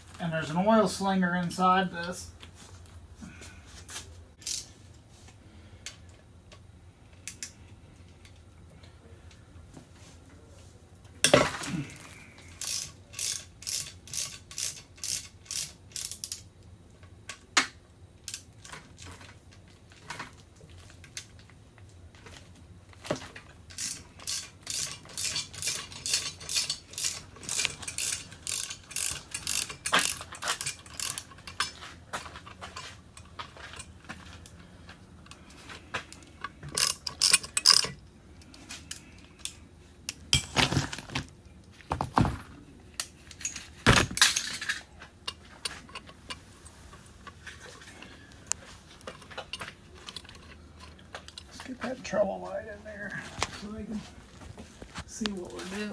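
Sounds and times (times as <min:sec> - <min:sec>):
ratchet wrench clicking: 0:04.4 - 0:04.7, 0:12.5 - 0:16.5, 0:18.3 - 0:18.5, 0:23.7 - 0:31.7, 0:36.8 - 0:38.0.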